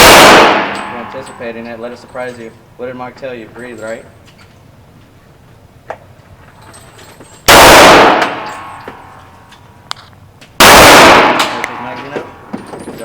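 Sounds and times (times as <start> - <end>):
pistol shot with echo: 0.0 - 1.4, 7.5 - 8.9, 10.6 - 12.3.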